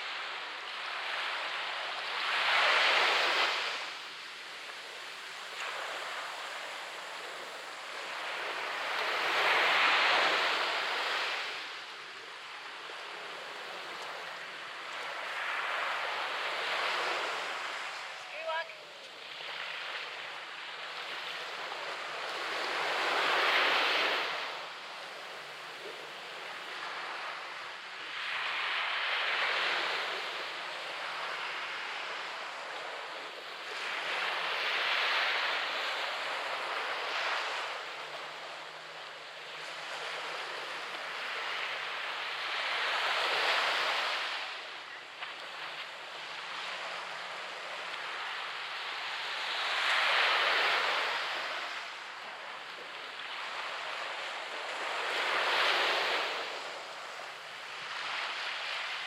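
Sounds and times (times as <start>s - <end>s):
waves breaking on beach: 0.0s - 59.0s.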